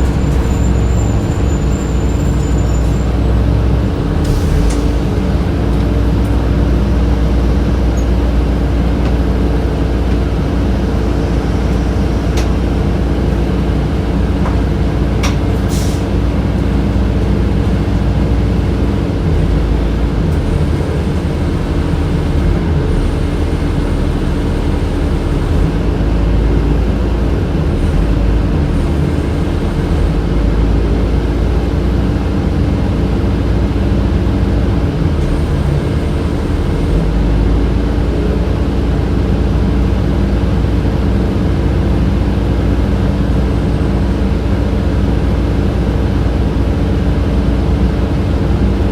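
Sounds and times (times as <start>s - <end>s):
air conditioning hum: 0.0s - 2.2s
bus engine and road rumble: 0.0s - 48.9s.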